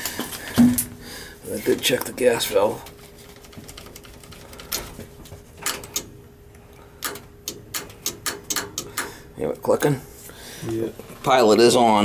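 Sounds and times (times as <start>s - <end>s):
faint steady hum: 0.0s - 12.0s
gas valve clicking: 7.0s - 9.2s.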